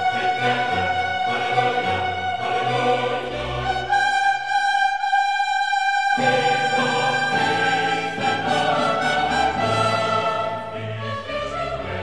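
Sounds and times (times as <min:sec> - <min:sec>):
orchestral classical music: 0:00.0 - 0:12.0.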